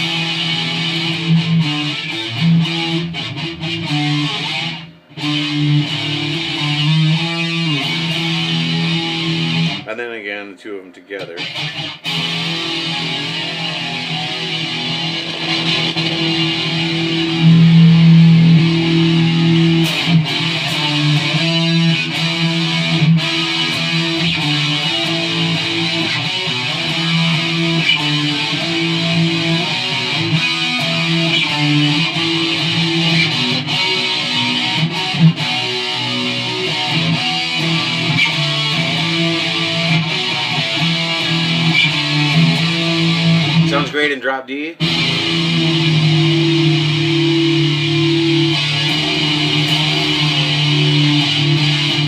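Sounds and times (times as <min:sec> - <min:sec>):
electric guitar riffing: 0:00.0 - 0:52.0.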